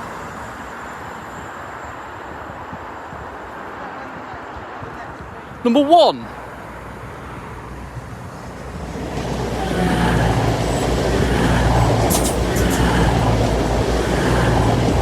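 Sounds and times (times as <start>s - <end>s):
diesel train running past: 6.3s - 15.0s.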